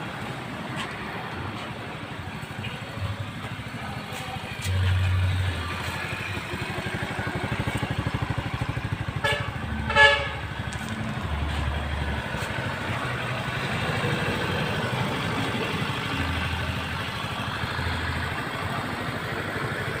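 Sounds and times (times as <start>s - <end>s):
motorcycle engine idling: 0.0s - 20.0s.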